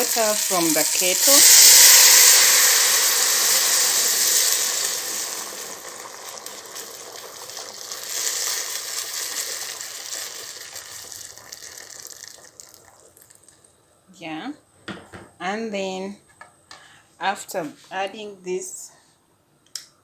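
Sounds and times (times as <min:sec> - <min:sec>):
pan sizzling and hissing: 0:00.0 - 0:13.7
water pouring: 0:00.0 - 0:13.7.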